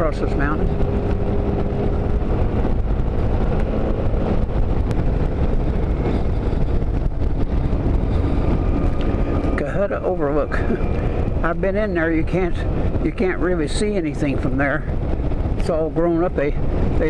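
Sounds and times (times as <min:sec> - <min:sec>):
motorcycle engine cruising: 0:00.0 - 0:17.0
wind buffeting microphone: 0:00.0 - 0:17.0.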